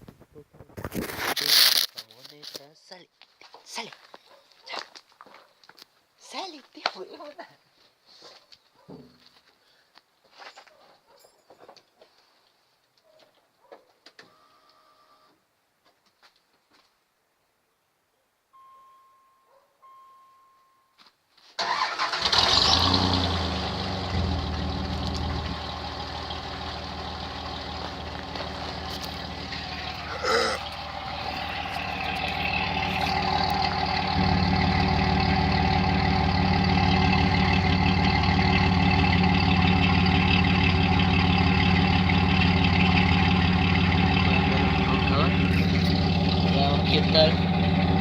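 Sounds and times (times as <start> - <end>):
faint steady beep: 14.3 - 15.3, 18.5 - 21.0
truck engine starting and idling: 21.6 - 48.0.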